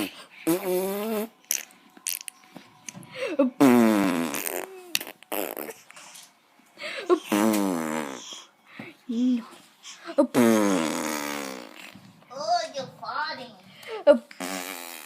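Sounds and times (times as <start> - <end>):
baby making buzzy noises: 3.6 - 6.0, 7.2 - 8.4, 10.3 - 12.0.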